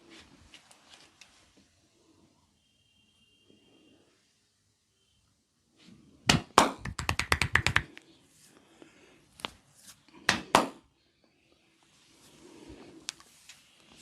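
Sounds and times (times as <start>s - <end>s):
hands slapping a head: 6.3s - 8.0s, 10.2s - 10.9s.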